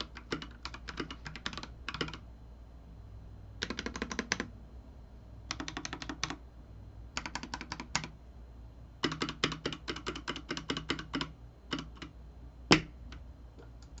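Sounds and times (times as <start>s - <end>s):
mechanical keyboard typing: 0.0s - 2.3s, 3.6s - 4.5s, 5.5s - 6.4s, 7.1s - 8.2s, 9.0s - 12.9s.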